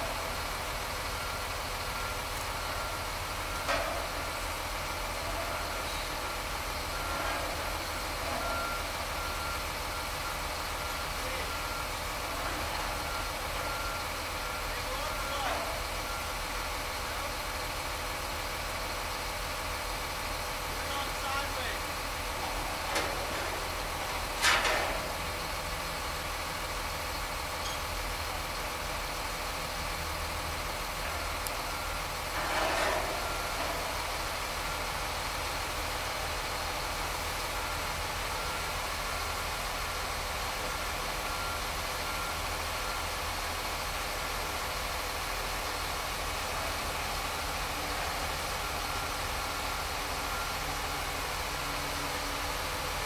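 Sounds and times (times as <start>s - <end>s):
heavy machinery engine idling: 0.0s - 53.0s
faint broken beeping: 5.4s - 16.4s
machinery clatter: 21.8s - 25.8s, 31.0s - 36.4s.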